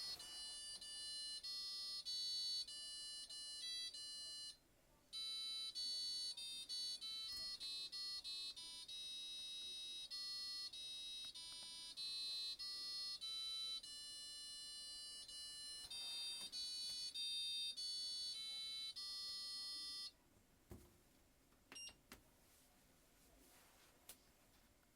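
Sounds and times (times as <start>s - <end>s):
washing machine beeping a tune: 0.0s - 20.2s.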